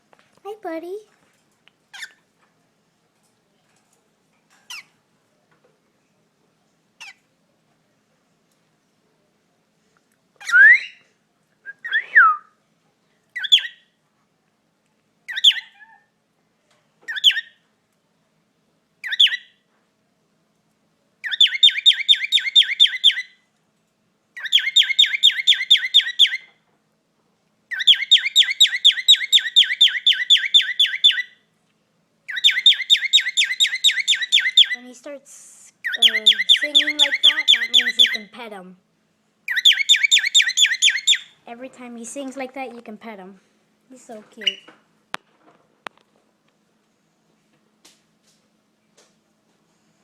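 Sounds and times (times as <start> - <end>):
bird singing fast repeated notes: 13.4 - 13.8, 19.0 - 19.5, 21.2 - 23.4, 24.4 - 26.5, 27.7 - 31.4, 32.3 - 34.8, 35.8 - 38.3, 39.5 - 41.4
bird chirps: 13.4 - 13.9, 15.3 - 16.0, 17.1 - 17.6, 19.0 - 19.6, 21.2 - 23.4, 24.4 - 26.6, 27.7 - 31.5, 32.3 - 34.8, 35.8 - 38.3, 39.5 - 41.4, 44.4 - 44.8.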